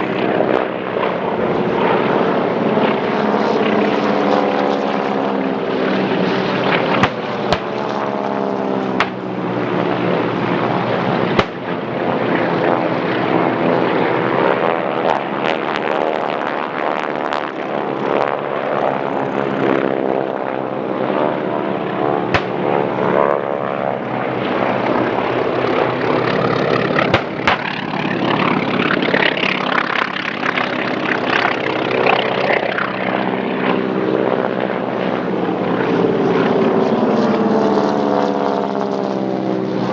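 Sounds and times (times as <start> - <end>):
propeller planes flying overhead: 0.0 - 39.9
sharp cracks: 6.8 - 7.8, 9.0 - 9.3, 11.4 - 11.8, 22.3 - 22.7, 27.0 - 27.8.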